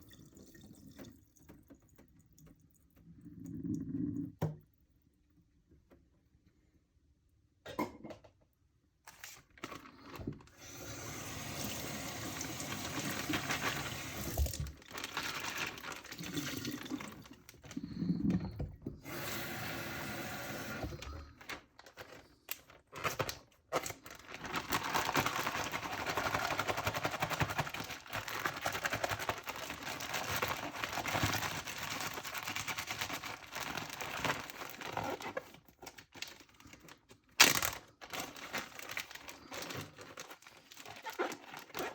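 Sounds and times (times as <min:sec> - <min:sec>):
tap running into a sink: 0:14.0 - 0:14.8.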